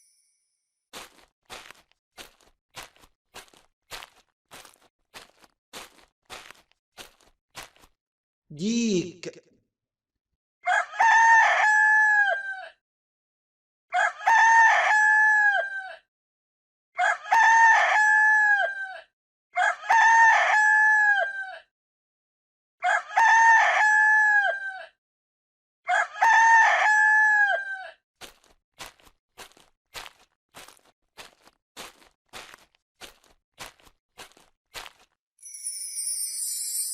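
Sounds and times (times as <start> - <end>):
rooster crowing: 10.6 - 12.7, 13.9 - 15.9, 17.0 - 18.9, 19.6 - 21.5, 22.8 - 24.9, 25.9 - 27.9.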